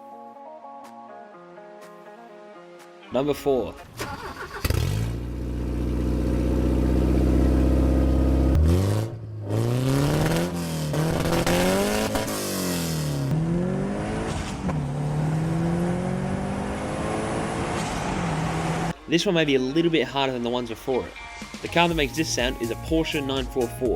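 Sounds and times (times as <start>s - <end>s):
car engine revving: 4.0s - 19.0s.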